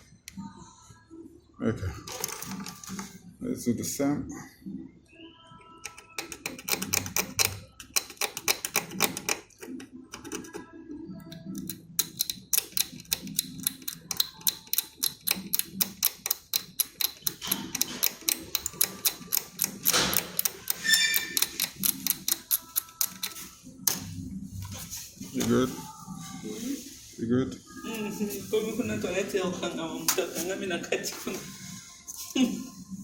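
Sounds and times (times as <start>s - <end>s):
rapid regular clicking: 5.9s - 10.6s, 11.6s - 24.0s.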